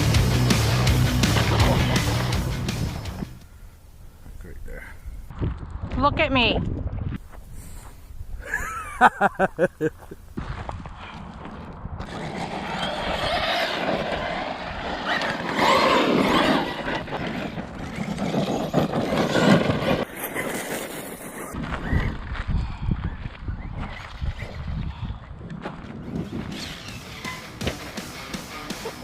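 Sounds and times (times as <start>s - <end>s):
tyres rushing on ground: 0.0s - 3.4s, 12.1s - 21.4s.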